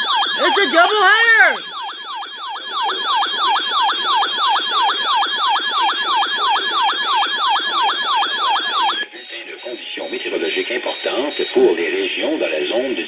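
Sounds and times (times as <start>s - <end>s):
siren-like alert tone: 0.0s - 9.0s.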